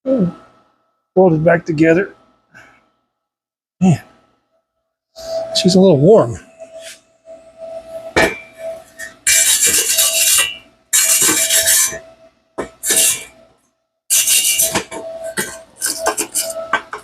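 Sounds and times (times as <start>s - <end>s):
rasping scraping on metal: 8.6s - 13.4s, 14.1s - 17.0s.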